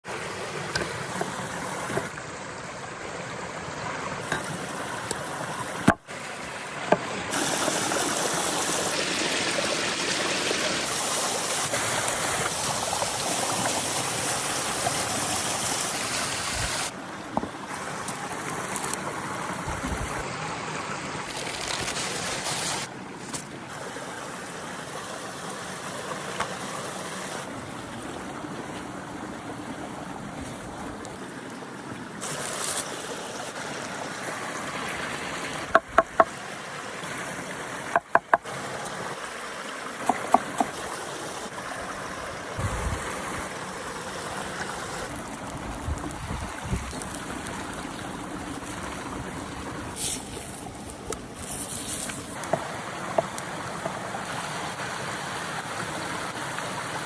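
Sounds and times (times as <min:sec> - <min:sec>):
chicken sizzling on hot stone: 0:50.0 - 0:52.5.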